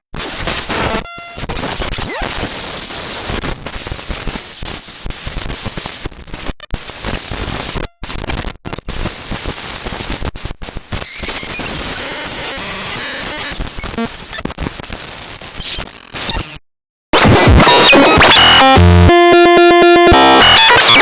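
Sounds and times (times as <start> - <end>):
harsh glitchy static: 0.2 - 16.6, 17.2 - 21.0.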